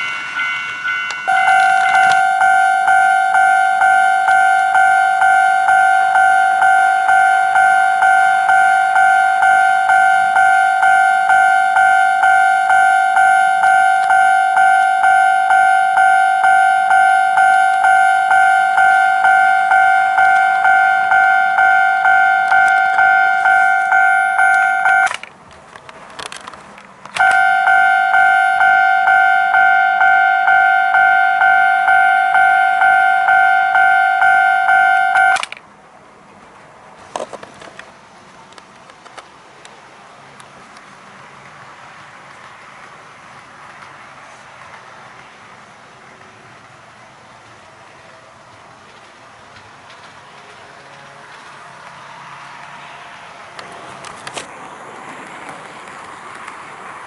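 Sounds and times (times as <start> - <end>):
electronic crossing bell dinging: 0.0 - 25.2, 27.2 - 35.5.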